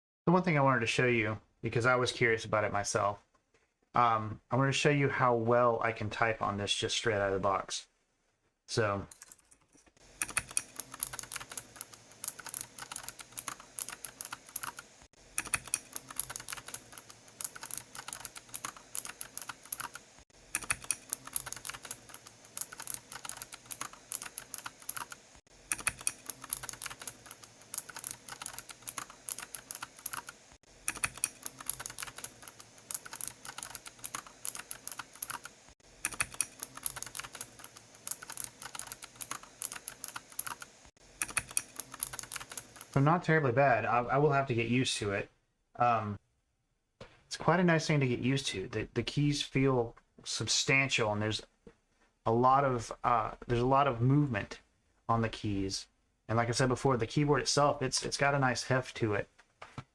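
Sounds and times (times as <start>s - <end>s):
mechanical keyboard key clicks: 10.2s - 43.0s.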